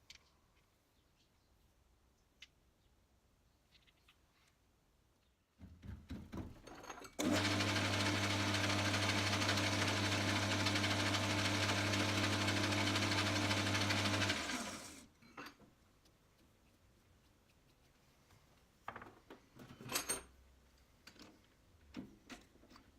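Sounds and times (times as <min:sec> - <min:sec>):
machine tool electric motor running: 0:07.2 - 0:15.0.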